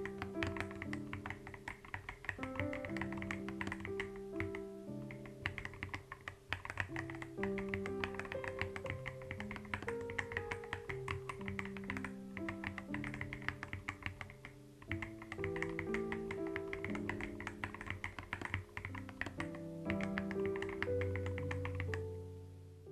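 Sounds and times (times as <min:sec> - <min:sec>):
keyboard typing: 0:00.0 - 0:22.2
gentle background music: 0:00.0 - 0:22.9.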